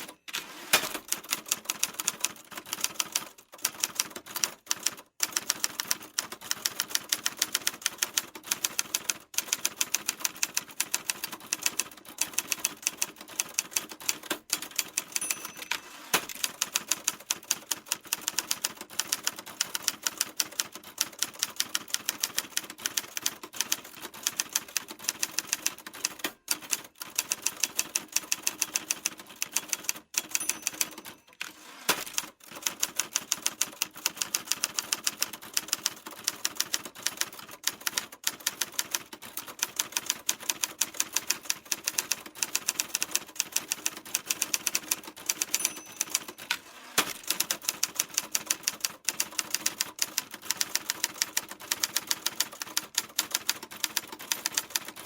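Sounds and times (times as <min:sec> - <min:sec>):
typewriter keys clicking: 0:00.0 - 0:55.0.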